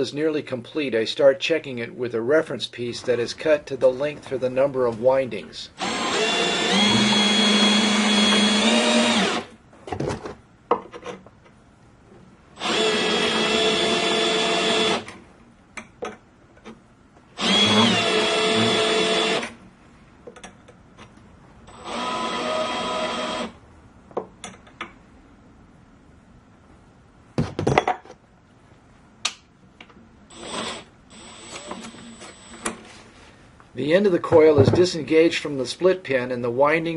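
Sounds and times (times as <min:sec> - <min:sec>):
power drill whirring: 0:05.8 - 0:09.6, 0:12.6 - 0:15.2, 0:17.4 - 0:19.6, 0:21.7 - 0:23.6, 0:30.3 - 0:32.7.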